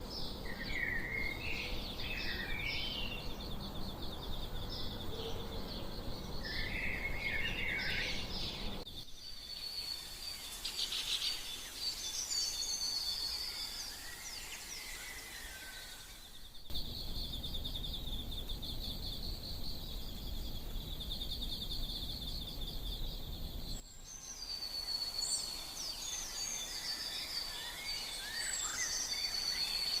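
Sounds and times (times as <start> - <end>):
small birds chirping: 0.0 - 30.0
rapid insect trill: 6.2 - 30.0.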